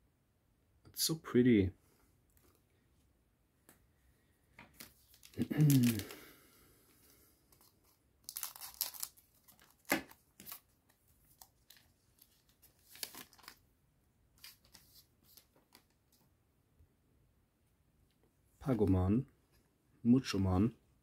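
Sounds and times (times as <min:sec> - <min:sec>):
foil wrapper tearing and crinkling: 0:05.0 - 0:06.3, 0:07.6 - 0:10.6, 0:11.3 - 0:13.6.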